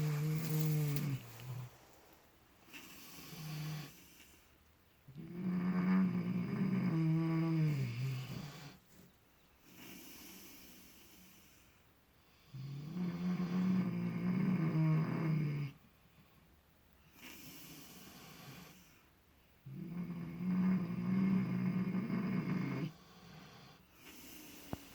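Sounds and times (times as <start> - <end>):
pig snoring: 0.0 - 1.8, 2.6 - 4.4, 5.1 - 8.8, 9.6 - 11.7, 12.4 - 15.8, 17.1 - 19.0, 19.6 - 24.9
soft breaths: 0.0 - 4.8, 7.7 - 12.6, 22.9 - 24.9.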